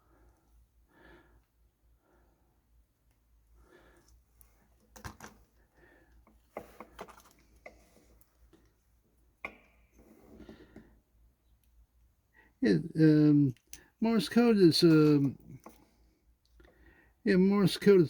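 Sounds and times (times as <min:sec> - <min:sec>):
hands handling small parts: 0:04.0 - 0:10.4.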